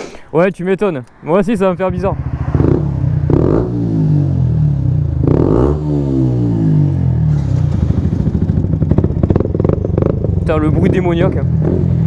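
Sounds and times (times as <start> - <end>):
motorcycle engine revving: 1.8 - 12.0.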